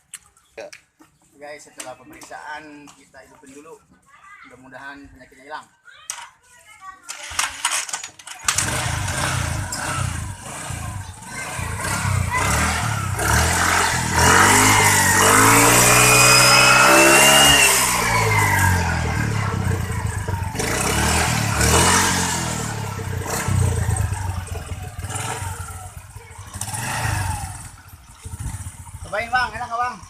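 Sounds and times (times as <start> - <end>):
scooter engine revving: 8.4 - 30.0.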